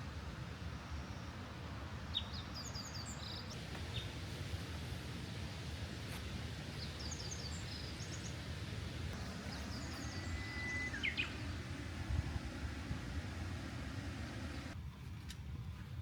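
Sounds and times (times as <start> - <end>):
birds chirping: 9.1 - 14.8
low background rumble: 9.1 - 14.8
bird whistle: 9.3 - 11.8.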